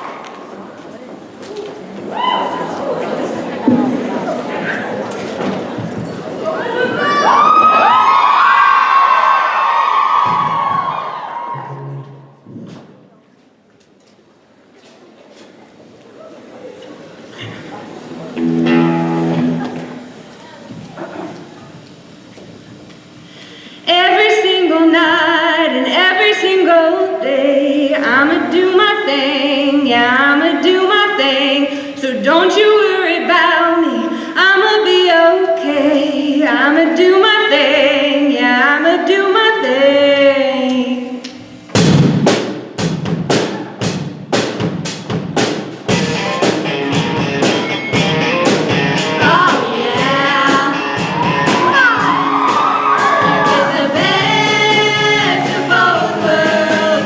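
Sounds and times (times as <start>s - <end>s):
fast dance track with drums: 42.8s - 57.0s
person singing melody: 53.2s - 57.0s.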